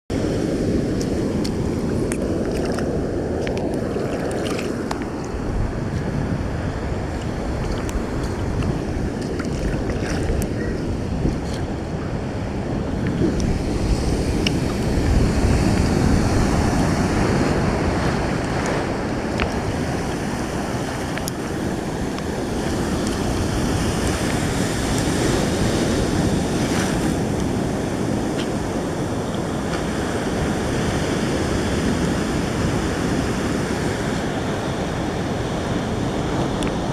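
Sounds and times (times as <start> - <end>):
seawater washing: 0.1 - 32.8
wind rumbling on microphone: 0.1 - 36.9.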